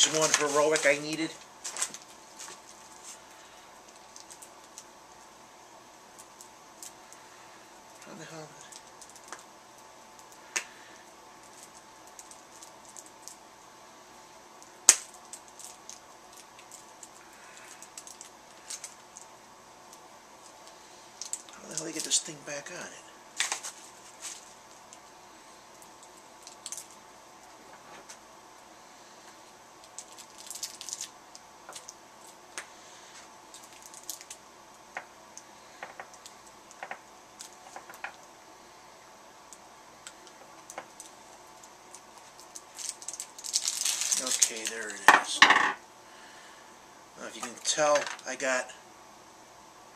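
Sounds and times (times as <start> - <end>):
packaging crinkling: 0.0 - 4.9, 14.9 - 19.3, 23.4 - 25.0, 25.8 - 27.0, 29.8 - 32.4, 33.5 - 34.4, 40.2 - 45.4.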